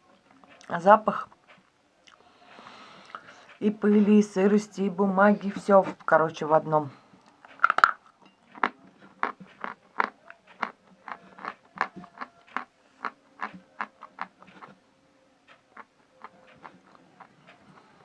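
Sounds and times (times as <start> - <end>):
person chewing chalk crunching: 7.7 - 14.8, 15.8 - 18.0.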